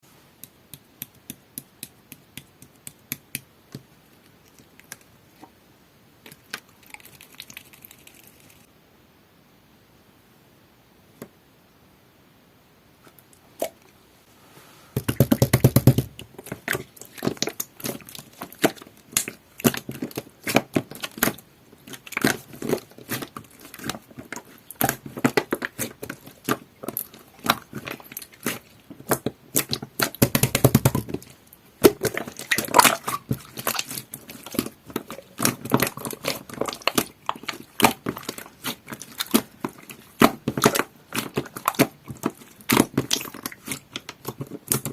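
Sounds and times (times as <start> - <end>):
slime squishing with wet clicks: 0.4 - 5.5, 16.5 - 30.2, 31.1 - 44.9
loud slime squishes: 15.2 - 44.9.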